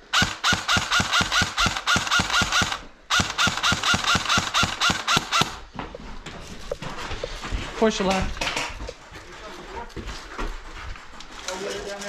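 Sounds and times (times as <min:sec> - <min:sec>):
airsoft gun firing rapidly: 0:00.0 - 0:05.6.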